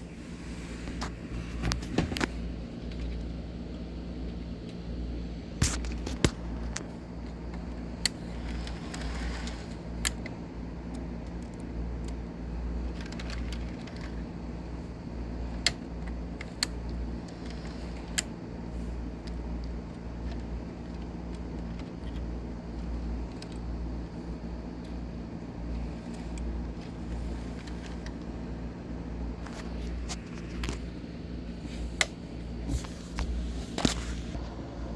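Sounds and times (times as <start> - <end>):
model train motor hum: 6.6 - 29.9.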